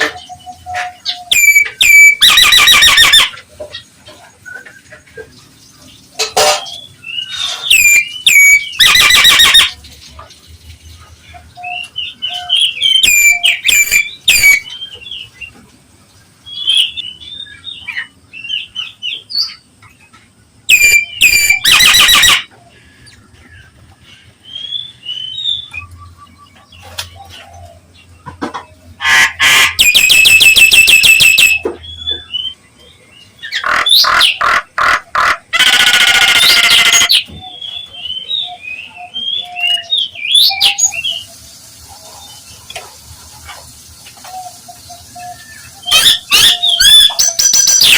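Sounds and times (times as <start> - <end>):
myna whistled notes: 1.2 - 3.4, 7.3 - 9.8, 11.8 - 14.7, 20.7 - 22.5.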